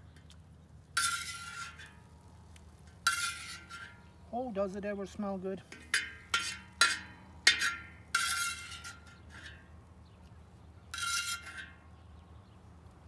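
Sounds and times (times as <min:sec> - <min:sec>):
utensil scraping a pan: 0:01.0 - 0:02.0, 0:03.0 - 0:04.0, 0:05.7 - 0:09.6, 0:11.0 - 0:11.7
metal utensil clinking: 0:05.7 - 0:09.0.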